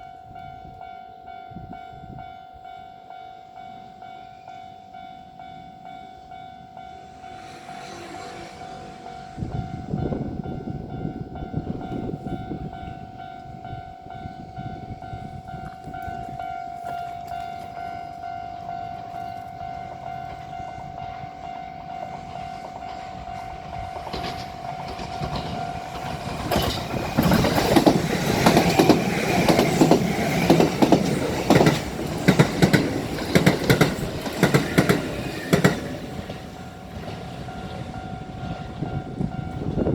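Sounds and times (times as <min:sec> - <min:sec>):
train wheels clattering: 0:21.5 - 0:39.0.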